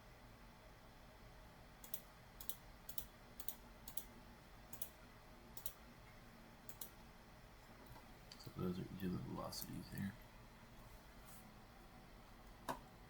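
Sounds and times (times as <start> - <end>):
computer mouse clicking: 1.8 - 4.1, 4.7 - 5.0, 5.6 - 5.8, 6.7 - 7.0.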